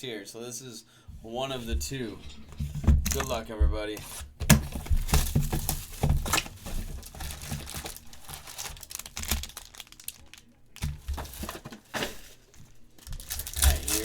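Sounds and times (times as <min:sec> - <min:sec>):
plastic wrapping crinkling and tearing: 0:04.5 - 0:14.0.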